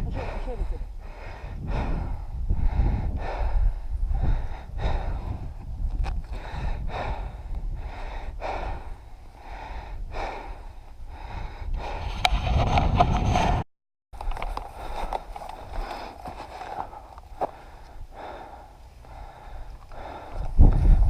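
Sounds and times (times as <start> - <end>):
heavy breathing: 0.0 - 5.6, 6.3 - 12.3, 14.4 - 21.0
low rumbling movement noise: 0.0 - 13.6.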